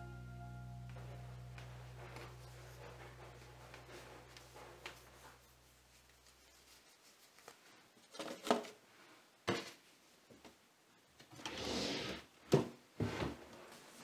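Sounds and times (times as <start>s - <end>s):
short rustle or scrape: 1.0s - 8.3s.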